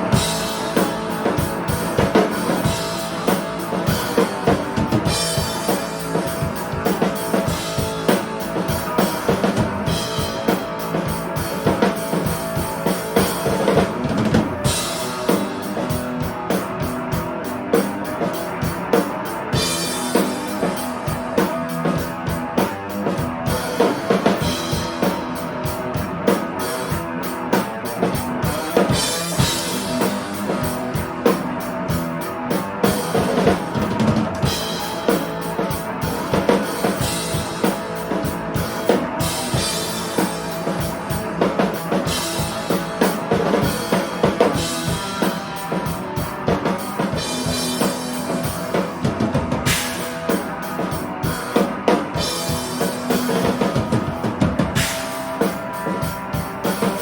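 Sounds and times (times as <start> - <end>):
rock band playing: 0.0 - 57.0.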